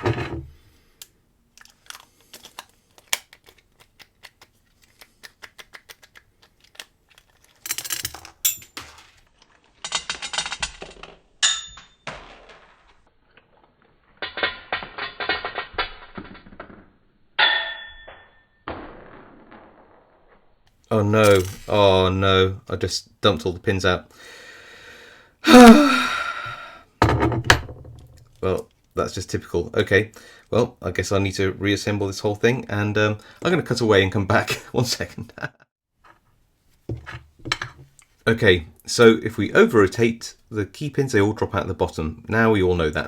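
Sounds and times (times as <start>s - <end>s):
metal parts clattering and ringing: 7.6s - 8.8s, 11.4s - 12.0s, 21.2s - 21.8s.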